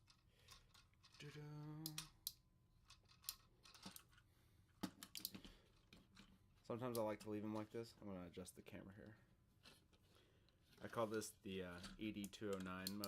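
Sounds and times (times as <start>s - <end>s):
plastic parts clicking and snapping: 0.0s - 4.2s, 4.8s - 7.4s, 11.8s - 13.0s
person humming: 1.2s - 2.2s.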